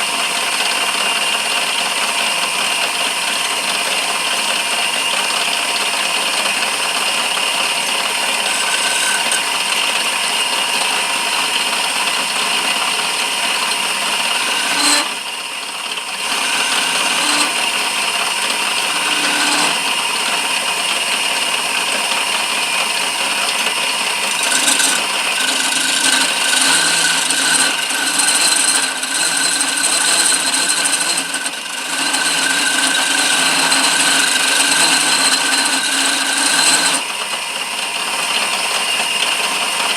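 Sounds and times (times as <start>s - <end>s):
lathe motor running: 0.1s - 38.9s
tool scraping wood: 7.9s - 21.5s, 23.2s - 37.2s.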